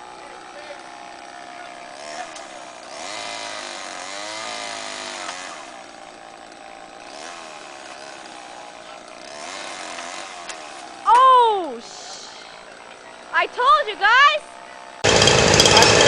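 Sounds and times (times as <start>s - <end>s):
chainsaw cutting wood: 0.0s - 16.0s.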